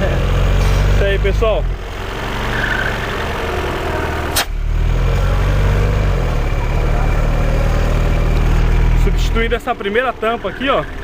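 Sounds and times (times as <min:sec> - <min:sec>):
car engine idling: 0:00.0 - 0:11.0
sharp click: 0:04.3 - 0:04.5.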